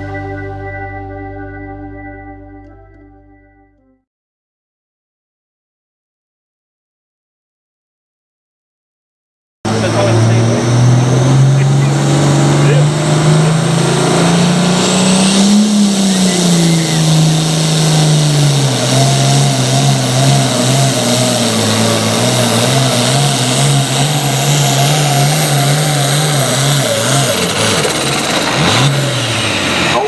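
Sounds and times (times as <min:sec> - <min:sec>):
diesel tractor engine under load: 0:09.7 - 0:30.0.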